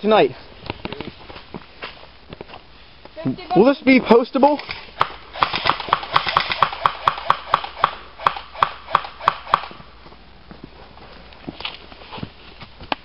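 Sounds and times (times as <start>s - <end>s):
airsoft gun firing: 5.0s - 9.8s.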